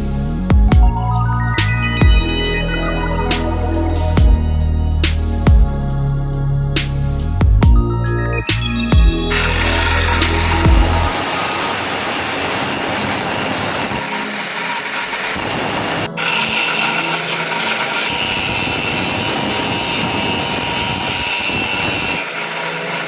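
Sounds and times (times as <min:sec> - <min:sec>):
power tool grinding: 0:09.2 - 0:23.0.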